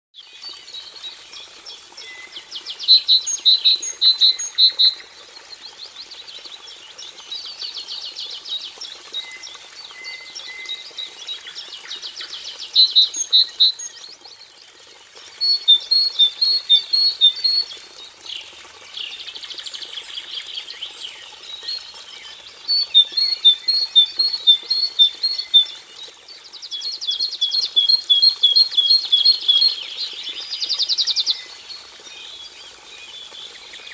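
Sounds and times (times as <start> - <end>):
bird whistling song: 2.0 - 5.1, 12.7 - 14.1, 15.4 - 17.7, 22.6 - 25.8, 26.7 - 31.5.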